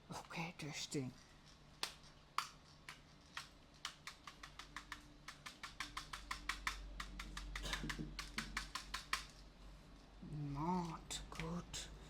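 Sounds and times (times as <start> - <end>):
toy hammer tapping: 1.8 - 9.3.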